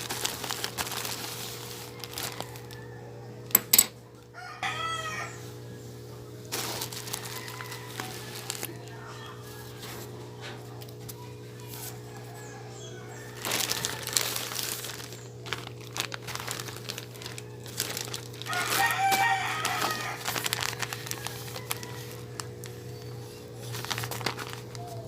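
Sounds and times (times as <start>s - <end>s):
plastic packaging crinkling: 0.0s - 2.9s, 6.5s - 10.1s, 10.8s - 25.0s
steady low hum: 0.0s - 25.0s
rooster crowing: 1.6s - 3.5s, 4.3s - 5.9s, 6.7s - 10.6s, 11.6s - 15.3s, 17.0s - 23.7s.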